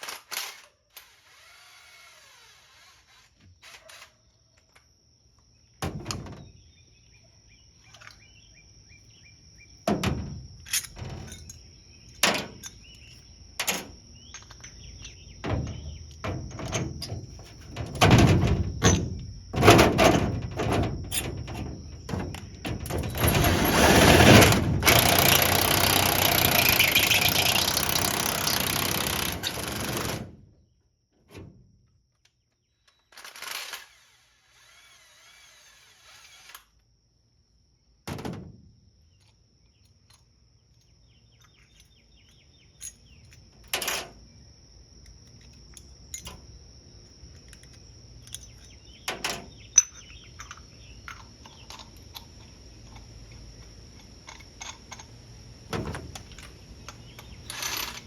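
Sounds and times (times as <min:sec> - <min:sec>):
metal knocks and clanks: 0:09.9 - 0:11.6, 0:13.6 - 0:30.4, 0:55.7 - 0:57.4
power tool running: 0:23.1 - 0:30.3.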